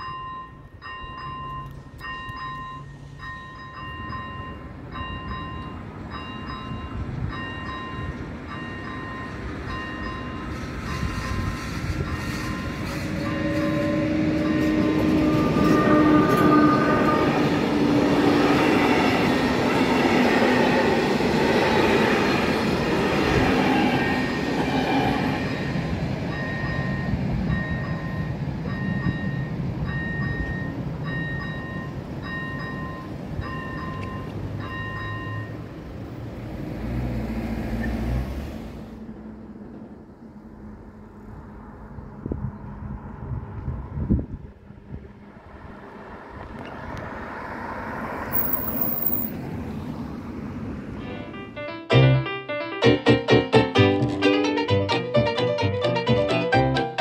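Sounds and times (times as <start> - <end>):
level crossing warning bell beeping: 0.0 - 17.1, 25.3 - 35.9, 48.3 - 49.4
train passing over rails: 0.0 - 51.6.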